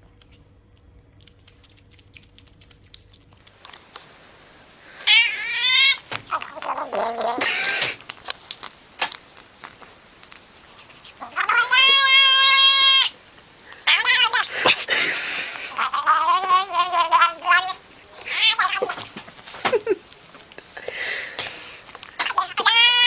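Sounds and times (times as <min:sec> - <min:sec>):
cat yowling: 0:05.0 - 0:08.1, 0:11.2 - 0:13.2, 0:13.8 - 0:14.5, 0:15.8 - 0:19.0, 0:22.2 - 0:23.0.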